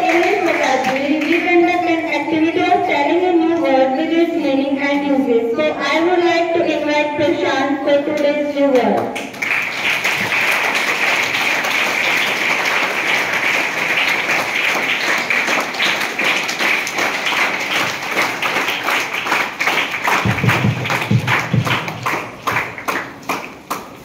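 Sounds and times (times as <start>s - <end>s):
crowd applauding: 0.0s - 1.5s, 9.2s - 24.0s
low thumps: 20.2s - 22.1s.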